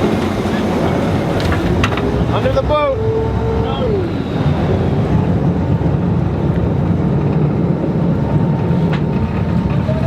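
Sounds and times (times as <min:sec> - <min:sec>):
boat engine running: 0:00.0 - 0:10.0
water and wind rushing: 0:00.0 - 0:10.0.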